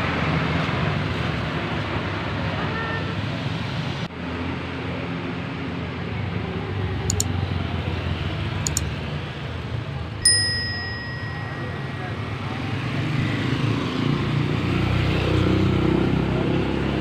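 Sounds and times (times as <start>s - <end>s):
low rumble of roadside noise: 0.0s - 17.0s
bell-like ding: 10.2s - 14.2s.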